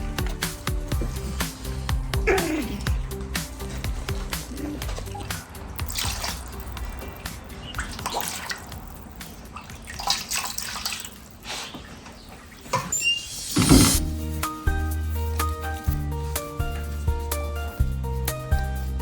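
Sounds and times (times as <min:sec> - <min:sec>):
background music: 0:00.0 - 0:09.6, 0:13.5 - 0:19.0
dogs chewing bones: 0:02.8 - 0:08.1.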